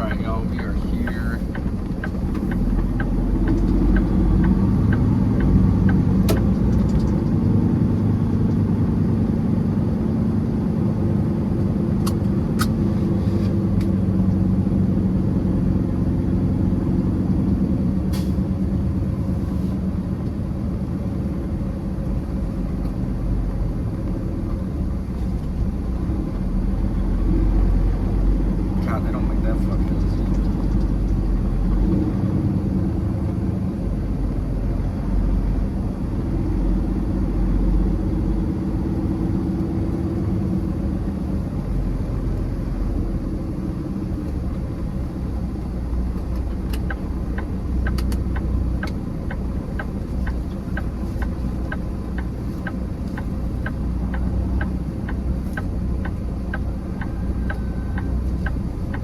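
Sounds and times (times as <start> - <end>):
turn signal clicking: 0.0 - 7.4, 45.7 - 59.0
diesel truck engine running: 0.0 - 59.0.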